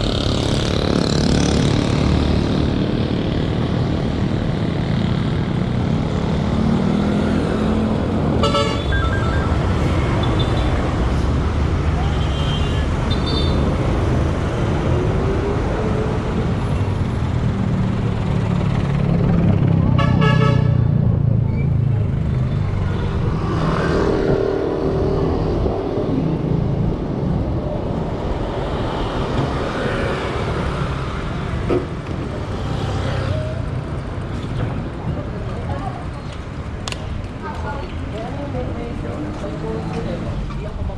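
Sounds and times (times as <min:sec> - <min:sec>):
traffic rumble: 0:00.0 - 0:40.9
vehicle engines passing: 0:00.0 - 0:40.9
vehicle horn toot: 0:08.4 - 0:10.7
short high beeps: 0:08.6 - 0:10.7.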